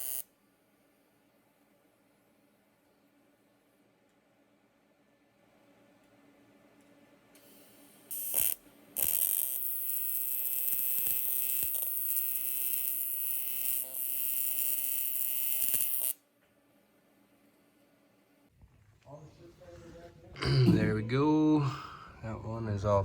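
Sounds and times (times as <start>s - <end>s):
welding arc buzzing: 0.0s - 0.3s, 7.4s - 16.2s.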